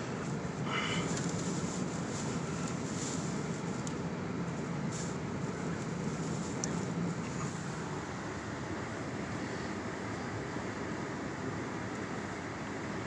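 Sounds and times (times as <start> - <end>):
blown sand hissing and ticking: 0.3 - 7.9.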